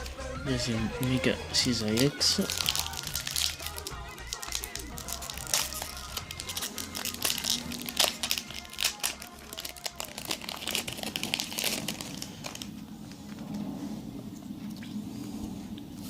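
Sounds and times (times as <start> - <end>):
foil wrapper crinkling: 1.1 - 13.4.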